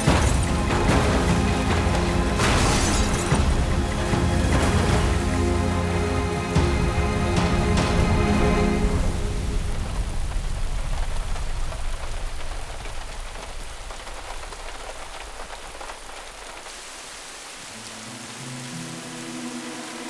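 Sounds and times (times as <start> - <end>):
low rumble: 0.0 - 15.2
heavy rain falling: 0.0 - 20.0.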